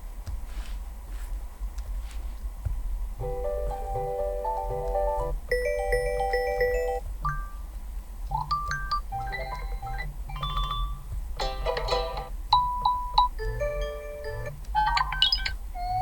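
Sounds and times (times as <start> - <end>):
low steady hum: 0.0 - 16.0
phone notification tones: 5.5 - 7.6, 12.6 - 16.0.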